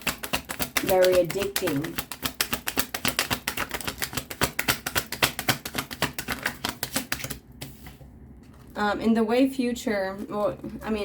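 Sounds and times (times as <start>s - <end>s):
cards being shuffled: 0.0s - 8.8s.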